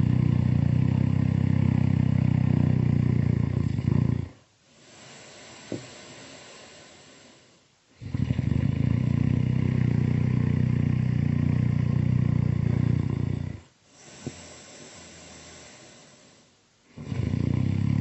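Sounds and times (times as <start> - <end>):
cartoon snoring: 0.0 - 4.4, 8.0 - 18.0
breath with small click: 4.9 - 7.6, 14.0 - 16.6.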